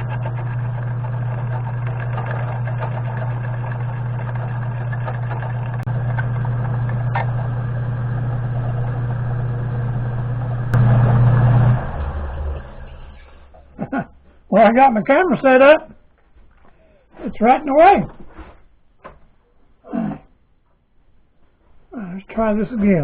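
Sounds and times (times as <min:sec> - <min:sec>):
electric motor humming and whirring: 0:00.0 - 0:13.5.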